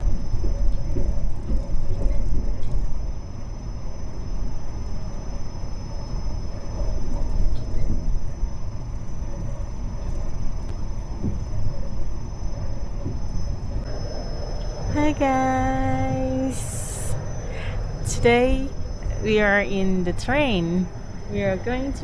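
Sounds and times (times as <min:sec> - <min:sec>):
passenger train rumbling: 0:12.6 - 0:22.0
faint high-pitched tone: 0:13.8 - 0:22.0.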